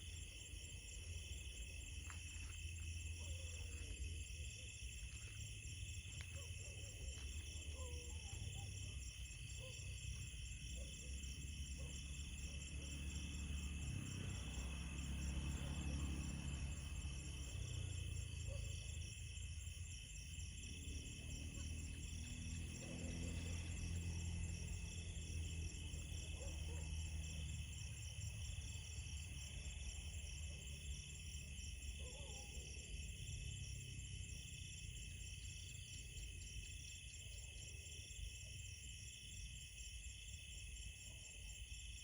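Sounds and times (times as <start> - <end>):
crickets and insects trilling: 0.0 - 42.0.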